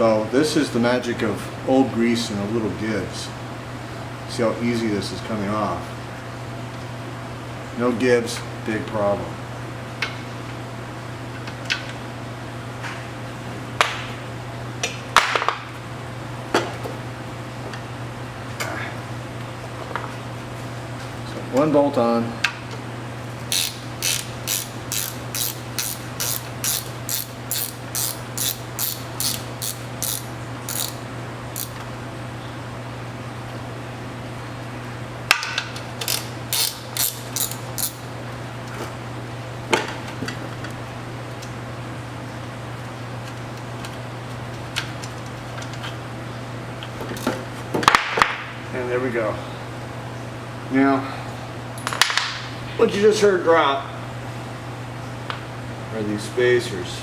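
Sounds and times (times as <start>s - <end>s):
steady low hum: 0.0s - 57.0s
ratchet wrench clicking: 23.5s - 31.0s, 31.6s - 31.8s, 36.0s - 38.0s.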